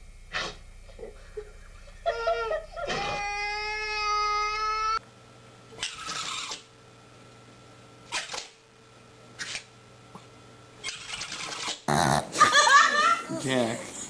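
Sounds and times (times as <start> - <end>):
pet sneezing: 0.3 - 0.6.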